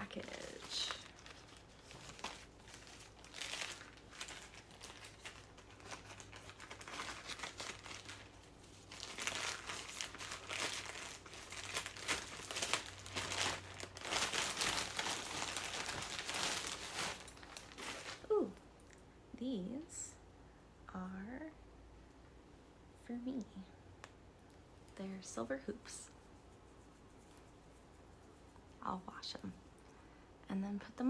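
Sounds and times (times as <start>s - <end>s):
parcel packaging crinkling: 0.0s - 18.6s.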